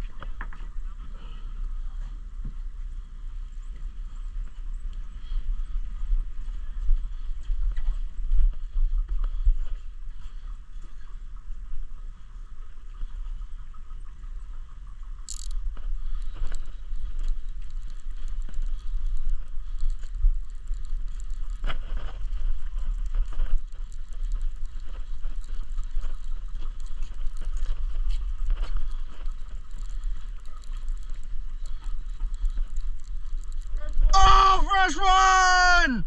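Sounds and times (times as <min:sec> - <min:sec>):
steady low rumble: 0:00.0 - 0:34.1
fishing reel ratcheting clicks: 0:15.3 - 0:15.6.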